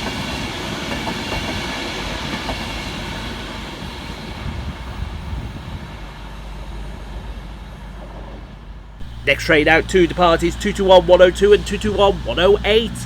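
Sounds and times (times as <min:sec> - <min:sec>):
electric train passing: 0:05.3 - 0:13.0.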